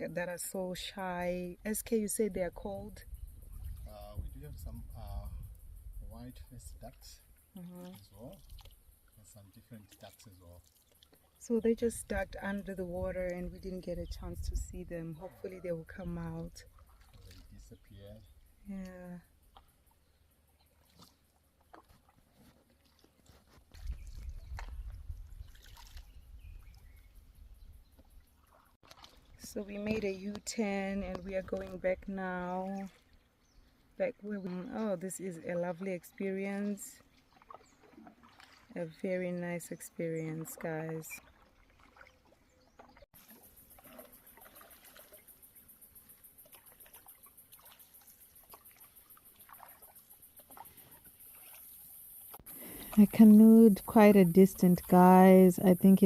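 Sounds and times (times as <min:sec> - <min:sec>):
water trickling and sloshing: 0:00.0 - 0:56.0
paddle strokes in water: 0:07.8 - 0:08.8, 0:16.6 - 0:17.8, 0:20.4 - 0:27.1, 0:27.9 - 0:30.4, 0:32.5 - 0:34.6, 0:36.6 - 0:39.4, 0:40.2 - 0:53.1.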